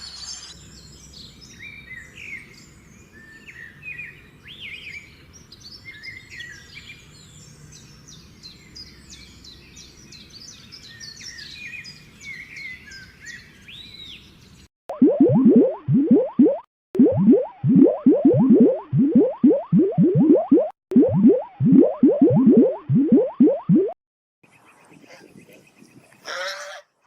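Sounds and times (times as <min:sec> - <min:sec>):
birds singing: 0:00.0 - 0:14.6, 0:24.5 - 0:26.8.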